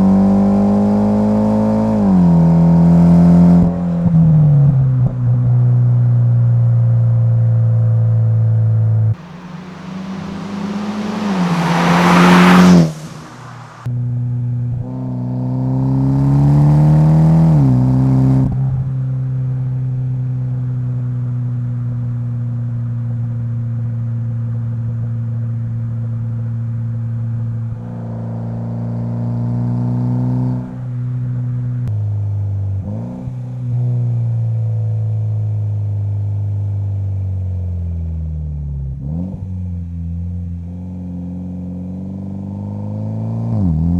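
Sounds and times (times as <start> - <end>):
car engine accelerating: 9.2 - 13.9
engine decelerating: 9.2 - 13.9.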